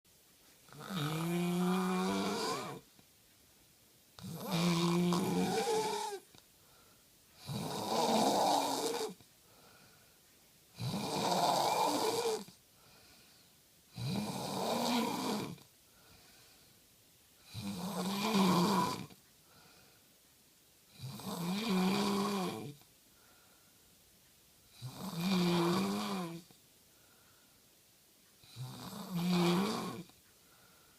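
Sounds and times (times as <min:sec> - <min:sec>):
snoring: 0:00.7 - 0:02.9, 0:04.2 - 0:06.4, 0:07.4 - 0:09.2, 0:10.7 - 0:12.6, 0:13.9 - 0:15.7, 0:17.4 - 0:19.2, 0:20.9 - 0:22.8, 0:24.7 - 0:26.6, 0:28.4 - 0:30.2.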